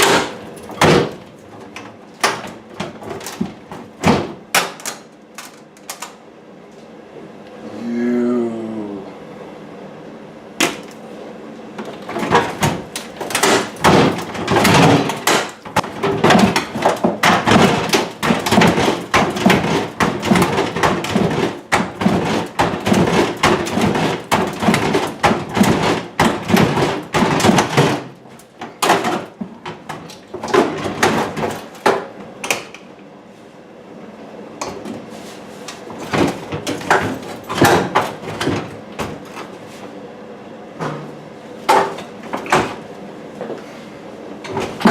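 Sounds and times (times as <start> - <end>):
wooden cabinets banging and clattering: 0.0 - 6.1, 11.8 - 32.7, 35.8 - 39.6, 40.8 - 42.9, 44.4 - 44.9.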